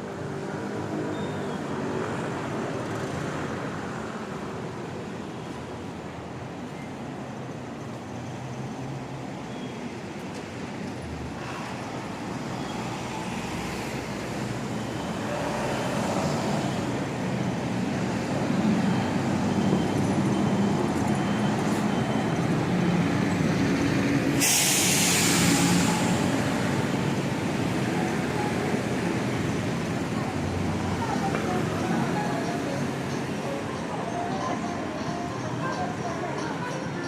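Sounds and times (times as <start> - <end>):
street traffic: 0.0 - 37.0
heavy vehicle engine running: 14.4 - 37.0
loud hiss: 24.4 - 26.2.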